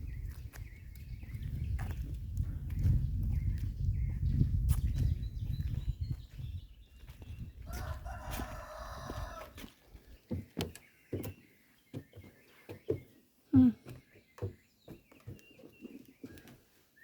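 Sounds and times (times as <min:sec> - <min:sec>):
rooster crowing: 0:07.7 - 0:09.6.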